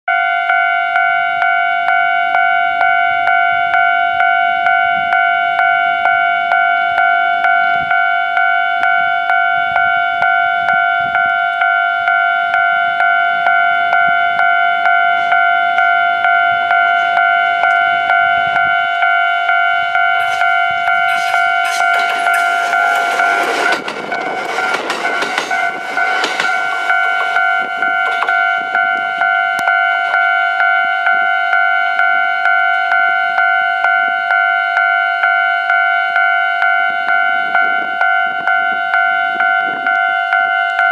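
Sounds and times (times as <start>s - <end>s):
level crossing bell ringing: 0.1s - 40.9s
train wheels on rails: 19.8s - 30.8s.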